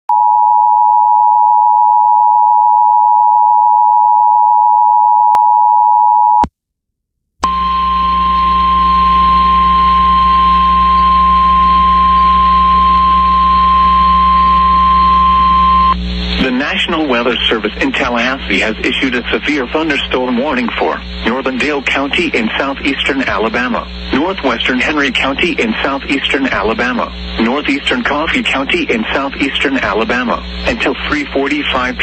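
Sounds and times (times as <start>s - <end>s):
radio hiss and hum: 7.4s - 32.0s
steady warning alarm tone: 7.4s - 32.0s.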